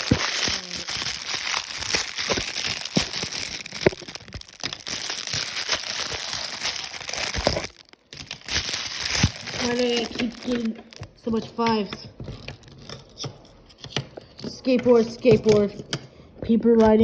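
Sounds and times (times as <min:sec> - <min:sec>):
packaging crinkling: 0:00.0 - 0:11.7.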